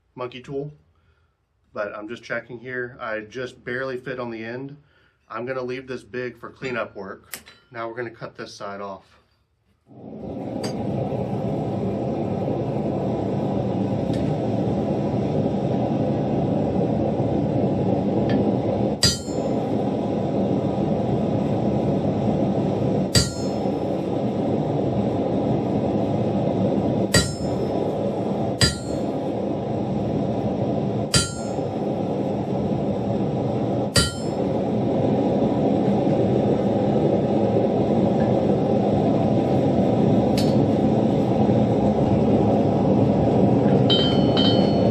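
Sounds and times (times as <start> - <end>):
forge roaring: 9.8 - 44.9.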